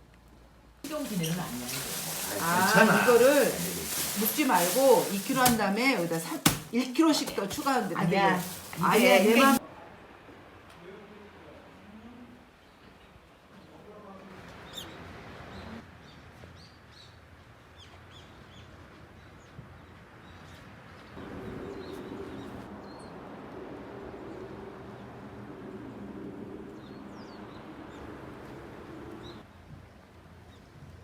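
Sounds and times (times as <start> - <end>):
background hiss: 0.8 - 9.6.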